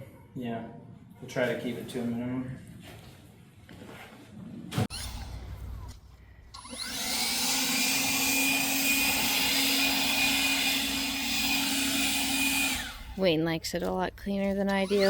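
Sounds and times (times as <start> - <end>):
leaf blower running: 6.7 - 13.2.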